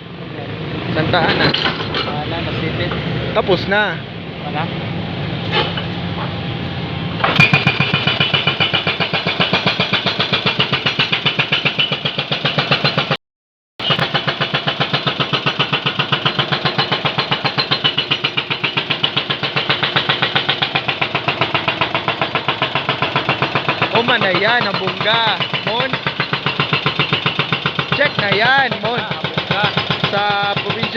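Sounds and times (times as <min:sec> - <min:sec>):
excavator engine running: 0:00.0 - 0:13.2, 0:13.8 - 0:30.9
hydraulic breaker hammering: 0:07.2 - 0:13.2, 0:13.8 - 0:30.9.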